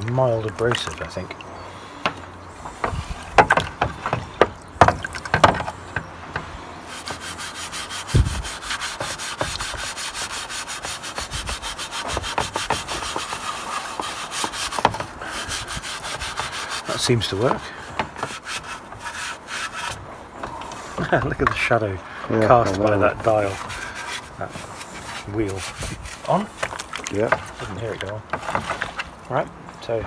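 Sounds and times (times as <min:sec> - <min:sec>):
scrubbing plastic: 0:00.0 - 0:01.4, 0:02.0 - 0:21.9, 0:22.5 - 0:29.4
knocks: 0:02.0 - 0:06.5.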